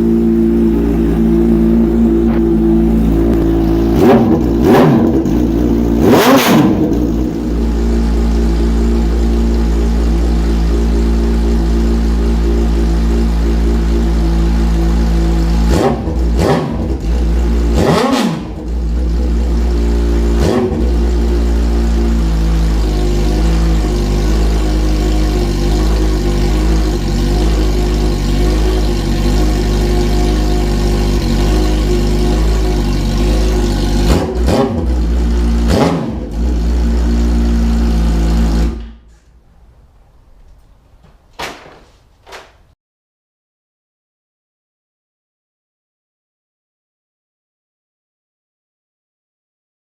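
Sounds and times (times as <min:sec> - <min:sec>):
motorcycle engine revving: 0:00.0 - 0:39.2.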